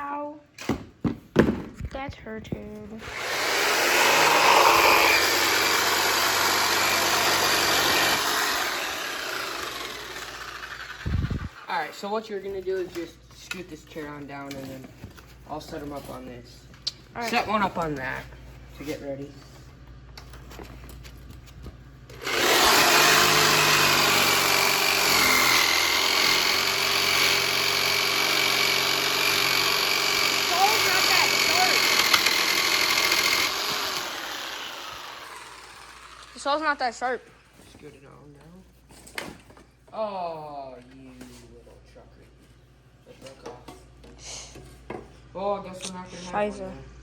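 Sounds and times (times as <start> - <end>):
electric saw cutting wood: 3.0 - 11.6, 22.1 - 36.7
motor running: 3.0 - 11.6, 22.1 - 36.8.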